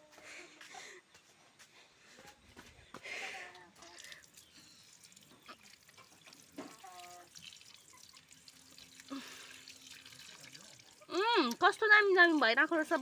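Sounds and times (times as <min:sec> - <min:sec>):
rainwater dripping: 0:03.8 - 0:13.0.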